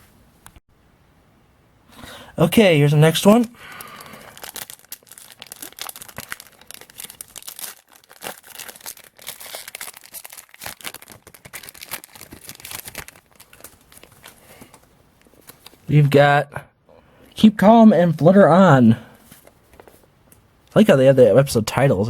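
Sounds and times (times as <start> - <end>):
plastic wrapper tearing and crinkling: 3.1 - 15.9.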